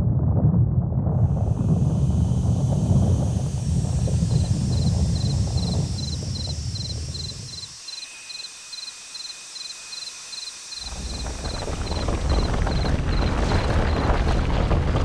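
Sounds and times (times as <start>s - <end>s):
deep rumble: 0.0s - 7.7s, 10.8s - 15.0s
cricket chirping: 1.9s - 14.3s.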